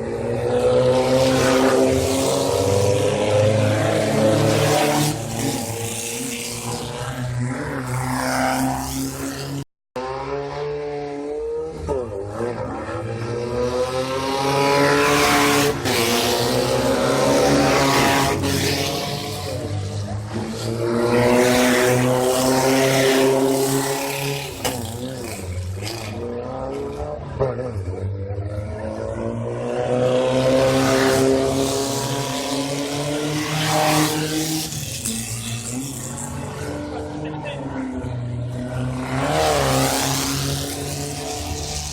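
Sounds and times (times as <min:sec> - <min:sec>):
race car engines revving: 0:00.0 - 0:41.9.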